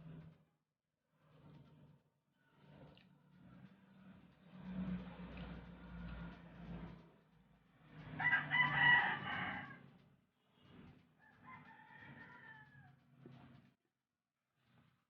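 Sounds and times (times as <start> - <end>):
rooster crowing: 8.2 - 9.8, 11.2 - 13.0.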